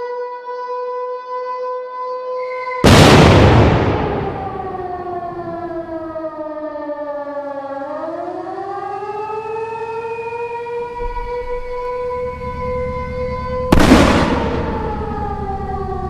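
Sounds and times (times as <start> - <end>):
air-raid siren wailing: 0.0 - 16.0
large explosion: 2.8 - 5.6, 13.7 - 15.1.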